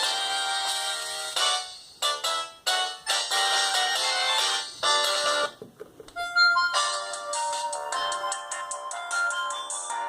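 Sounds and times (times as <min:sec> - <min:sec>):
polyphonic phone ringtones: 0:06.2 - 0:10.0.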